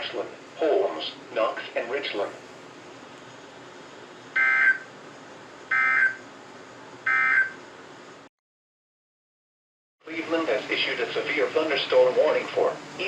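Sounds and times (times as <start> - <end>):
buzzy digital chirps: 4.4 - 4.8
receiver hiss: 10.1 - 13.0.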